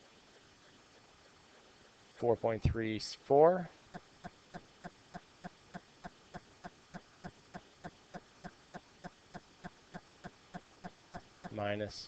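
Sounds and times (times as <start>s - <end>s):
faint even ticking: 3.4s - 11.8s.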